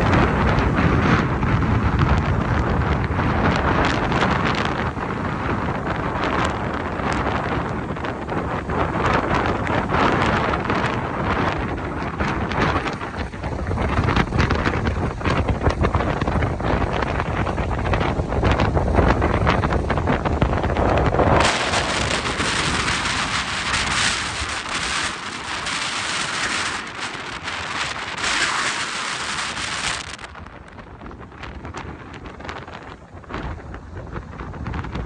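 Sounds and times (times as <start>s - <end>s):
gusty wind buffeting microphone: 0.0s - 35.0s
steady loud hiss: 21.1s - 30.8s.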